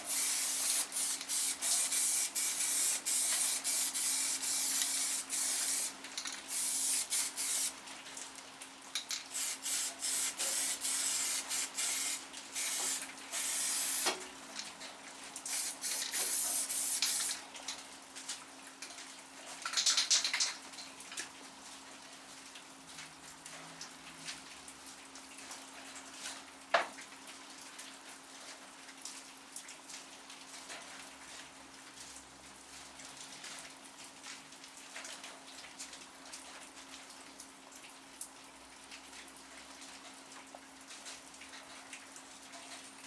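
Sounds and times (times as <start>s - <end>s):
spray can hissing bursts: 0.0s - 7.8s, 9.3s - 14.2s, 15.5s - 17.4s.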